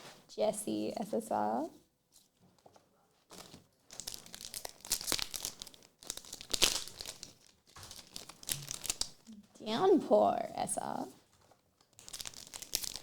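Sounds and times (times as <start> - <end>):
crinkly packaging torn open: 3.3 - 9.3, 11.8 - 13.0.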